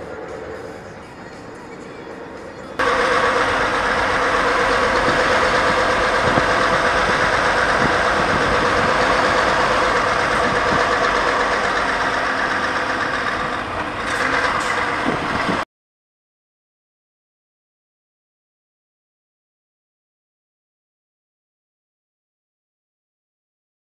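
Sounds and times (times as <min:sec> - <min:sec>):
truck diesel engine running: 0:00.0 - 0:15.6.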